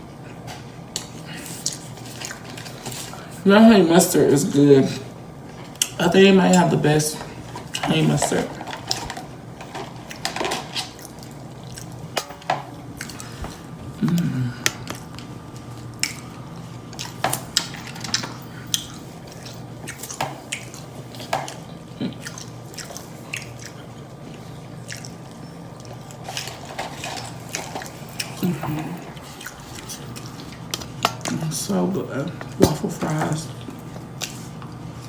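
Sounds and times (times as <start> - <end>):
open-mouth chewing: 10.8 - 12.1, 13.0 - 31.4.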